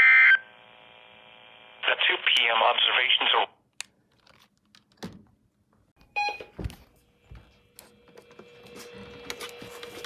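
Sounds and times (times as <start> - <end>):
short electronic beep: 6.2 - 6.5.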